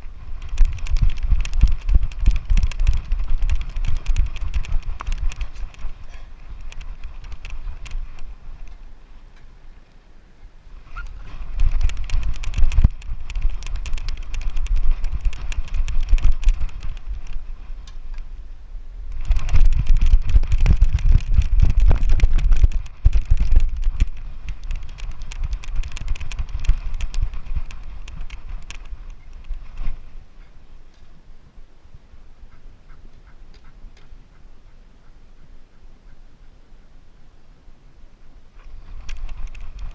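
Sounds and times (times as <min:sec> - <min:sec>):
camera clicking and rattling: 0:00.0 - 0:08.8, 0:11.0 - 0:18.3, 0:19.1 - 0:30.0, 0:38.7 - 0:39.9
low wind rumble: 0:00.0 - 0:39.9.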